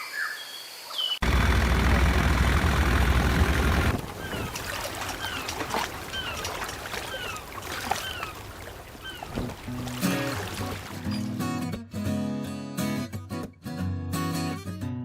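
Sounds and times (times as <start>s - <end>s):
loud rushing roar: 1.2s - 4.2s
water ambience: 1.2s - 11.5s
bird chirping: 4.0s - 9.4s.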